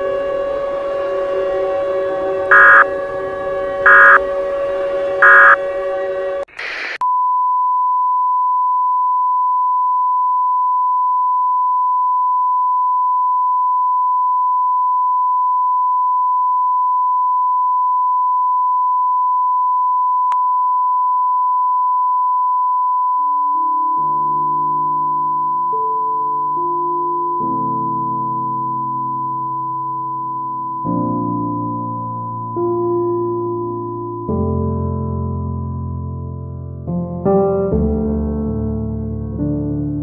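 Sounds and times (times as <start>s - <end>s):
steady drone: 0.3s - 7.0s
alert data code bursts: 2.5s - 2.9s, 3.9s - 4.2s, 5.2s - 5.6s
off-air tone: 2.5s - 2.9s, 3.9s - 4.2s, 5.2s - 5.6s
burst of static: 5.2s - 5.6s, 6.5s - 7.0s.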